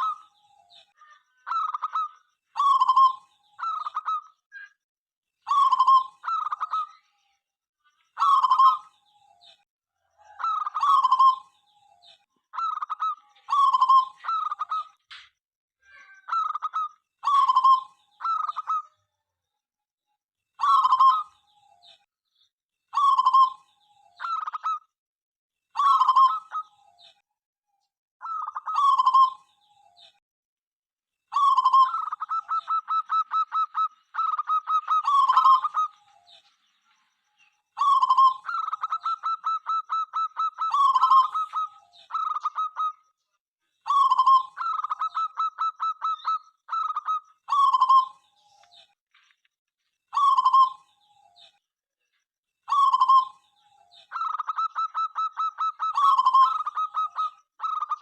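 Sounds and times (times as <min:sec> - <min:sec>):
dove cooing: 0:05.5 - 0:06.8, 0:08.2 - 0:08.8, 0:10.2 - 0:11.5, 0:20.6 - 0:21.3, 0:28.2 - 0:29.4, 0:31.3 - 0:36.2, 0:37.8 - 0:43.0, 0:43.9 - 0:48.2, 0:52.7 - 0:53.4, 0:54.1 - 0:58.0.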